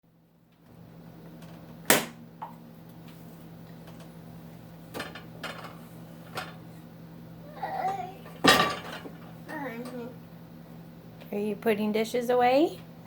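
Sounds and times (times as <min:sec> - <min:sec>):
dishes clattering: 0:07.8 - 0:10.0
dishes clinking and knocking: 0:07.9 - 0:10.0.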